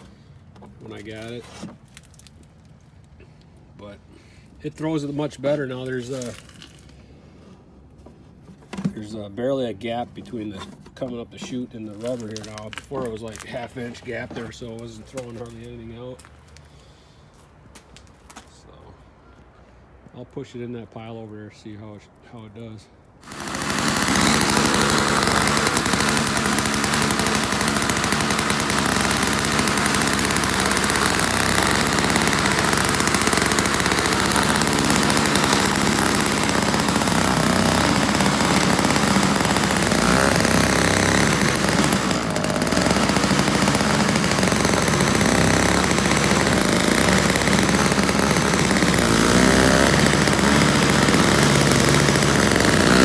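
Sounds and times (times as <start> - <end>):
snowblower engine running: 23.2 - 53.0.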